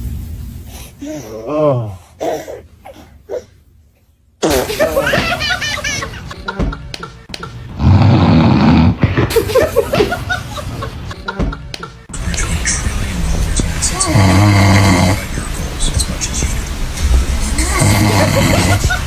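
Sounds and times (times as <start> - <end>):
people laughing and squealing: 4.5 - 7.6, 9.3 - 12.2, 17.5 - 19.0
low rasping snort: 7.7 - 9.0, 14.0 - 15.3, 17.6 - 18.9.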